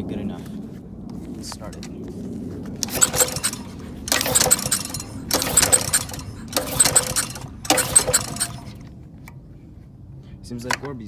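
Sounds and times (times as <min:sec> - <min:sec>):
engine pull-starter rattling pulls: 0:01.4 - 0:02.1, 0:02.7 - 0:08.9.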